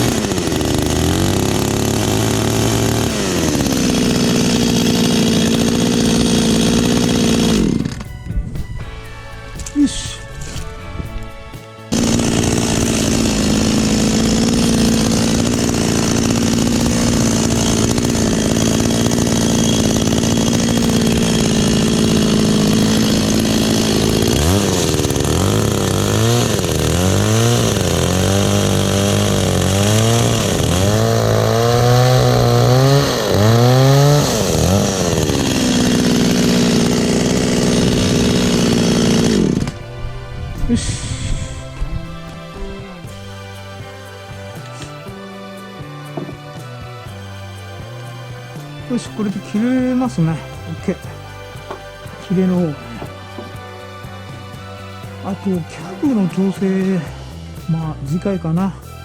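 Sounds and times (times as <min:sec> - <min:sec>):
chainsaw engine revving: 0:00.0 - 0:08.3, 0:08.9 - 0:59.0.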